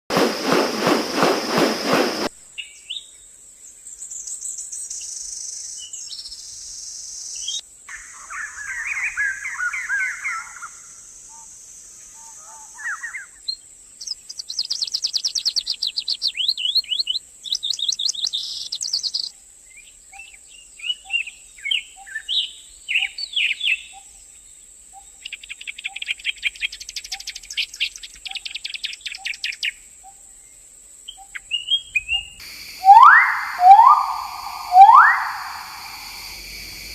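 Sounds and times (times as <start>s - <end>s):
steady high-pitched hiss: 0.1s - 36.9s
birds chirping and trilling: 31.2s - 36.9s.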